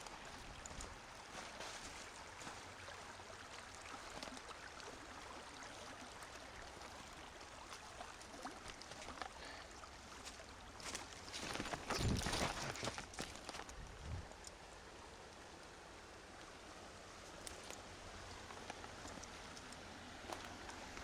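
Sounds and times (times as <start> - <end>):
creek water running: 0.0 - 21.0
faint ticks: 12.9 - 14.7, 16.3 - 21.0.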